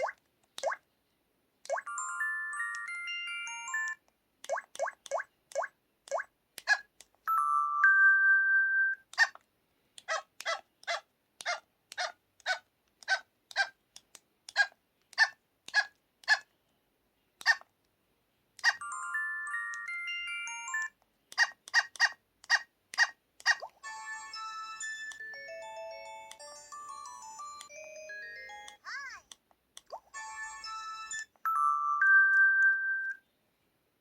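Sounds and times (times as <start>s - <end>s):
two-tone electronic chime: 7.3s - 9.0s, 30.1s - 33.2s.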